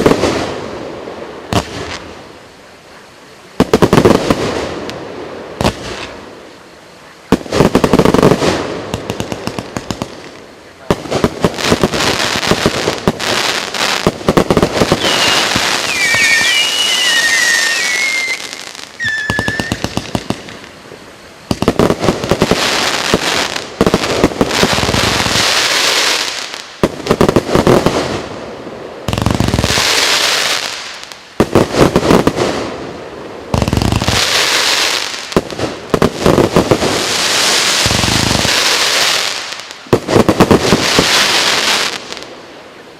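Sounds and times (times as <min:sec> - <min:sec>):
firework bangs and crackles: 0:00.0 - 0:42.8
firework whistling: 0:11.8 - 0:20.8.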